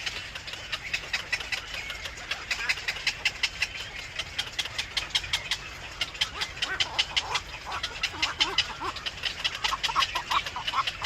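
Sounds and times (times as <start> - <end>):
baby birds peeping: 0.7 - 11.0
adult bird calling: 2.5 - 11.0.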